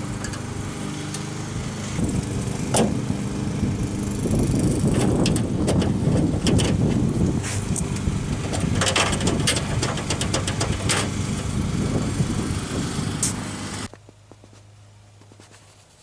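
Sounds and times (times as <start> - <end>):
engine rumbling unevenly: 0.0 - 15.2
clicks and knocks: 8.4 - 11.1.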